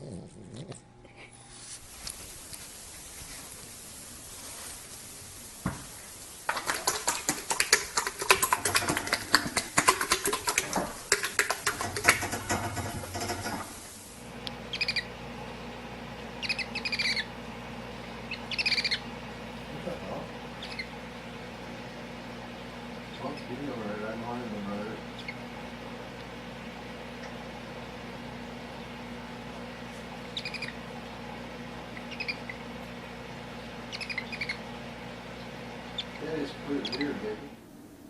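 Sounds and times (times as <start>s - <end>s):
animal clicking chirps: 14.4s - 15.1s, 16.4s - 17.3s, 18.3s - 19.0s, 20.6s - 20.9s, 30.3s - 30.8s, 31.9s - 32.7s, 33.9s - 34.6s, 35.4s - 36.2s, 36.8s - 37.2s
high falling chirps: 18.2s - 19.1s.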